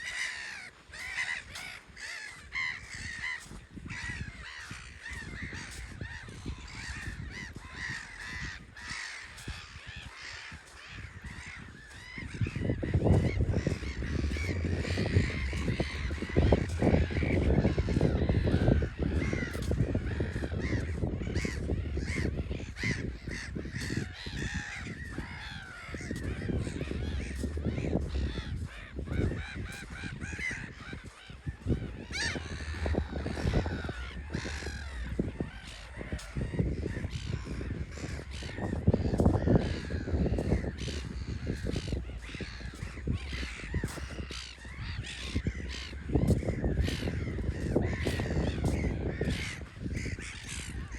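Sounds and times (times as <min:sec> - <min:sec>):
gulls calling: 0:00.0 - 0:50.9
steady low rumble: 0:11.7 - 0:21.2, 0:23.1 - 0:30.8, 0:31.4 - 0:48.9.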